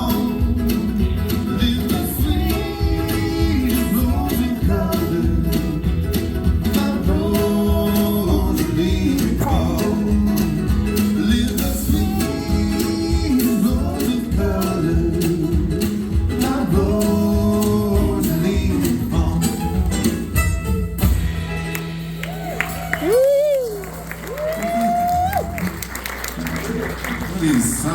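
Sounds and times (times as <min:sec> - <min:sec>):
person singing: 0:00.0 - 0:20.2
guitar strumming and plucking: 0:00.0 - 0:22.9
bluegrass string band: 0:00.0 - 0:23.1.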